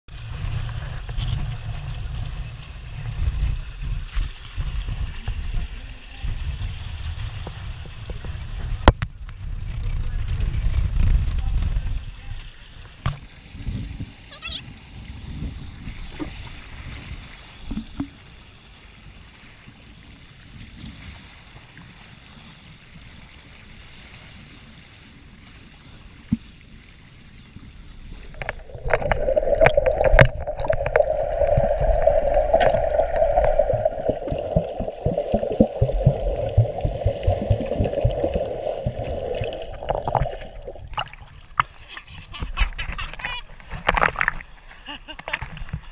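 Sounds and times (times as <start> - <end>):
rushing water and air: 12.5 - 41.8.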